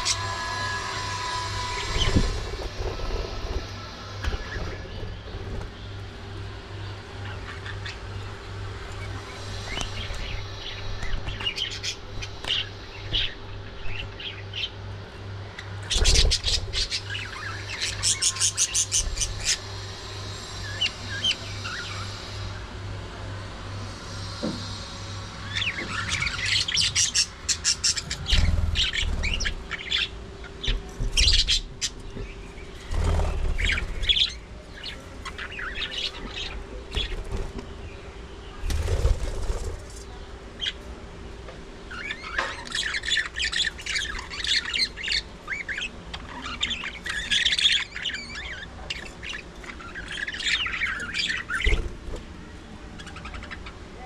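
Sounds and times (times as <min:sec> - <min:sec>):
budgerigars chirping and squawking: 0:00.0 - 0:05.7, 0:09.0 - 0:14.8, 0:15.6 - 0:22.5, 0:25.4 - 0:40.8, 0:41.9 - 0:52.2, 0:53.0 - 0:53.9.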